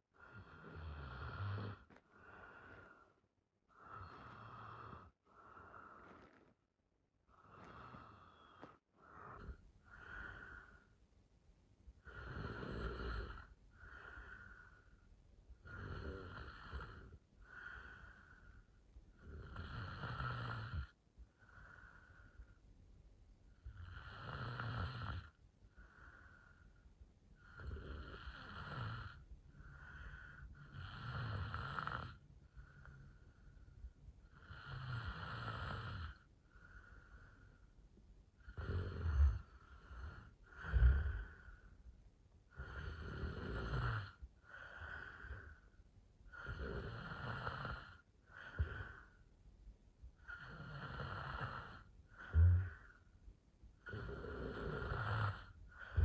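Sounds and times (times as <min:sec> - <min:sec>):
woman snoring: 0:00.2 - 0:02.9, 0:03.7 - 0:06.4, 0:07.4 - 0:10.7, 0:12.1 - 0:14.4, 0:15.6 - 0:18.0, 0:19.2 - 0:21.0, 0:23.8 - 0:25.4, 0:27.4 - 0:29.2, 0:30.6 - 0:32.2, 0:34.3 - 0:36.2, 0:38.4 - 0:41.5, 0:42.5 - 0:45.5, 0:46.3 - 0:49.1, 0:50.2 - 0:53.0, 0:53.8 - 0:56.0.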